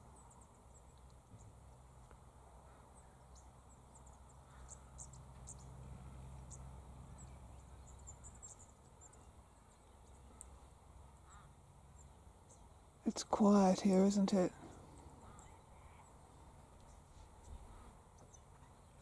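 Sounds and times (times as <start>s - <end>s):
low steady hum: 0.0s - 19.0s
high chirps and ticks: 3.4s - 5.8s.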